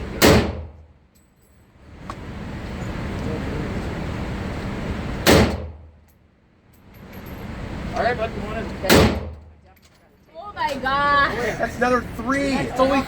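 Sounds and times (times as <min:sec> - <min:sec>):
rifle shots with echo: 0:00.2 - 0:00.8, 0:08.9 - 0:09.4.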